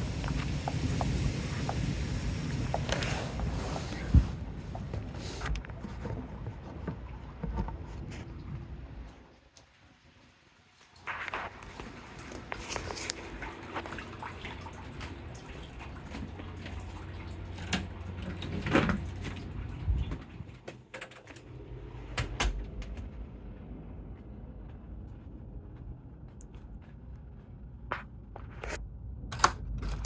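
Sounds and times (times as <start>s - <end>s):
water drips: 0.0s - 3.1s, 10.7s - 18.6s
rain hiss: 0.0s - 4.4s.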